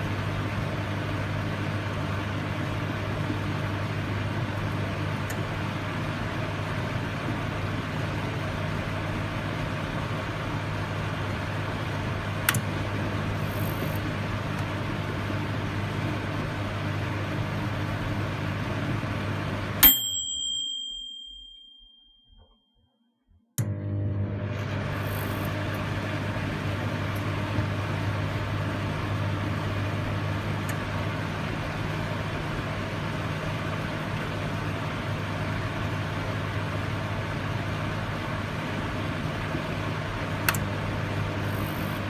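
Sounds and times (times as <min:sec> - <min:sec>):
microwave oven humming: 0:00.0 - 0:21.7, 0:23.6 - 0:42.0
high bell-like ding: 0:19.8 - 0:22.6.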